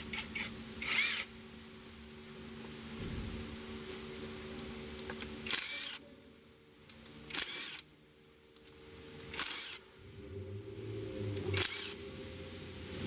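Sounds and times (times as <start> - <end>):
steady low hum: 0.0 - 13.0
ratchet wrench clicking: 0.1 - 1.3, 5.4 - 6.0, 7.3 - 7.9, 9.3 - 9.8, 11.6 - 12.0.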